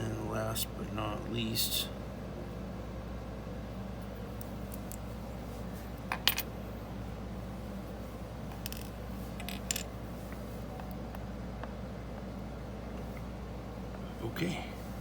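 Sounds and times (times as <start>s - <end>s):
small metal lock parts clinking: 8.6s - 9.9s.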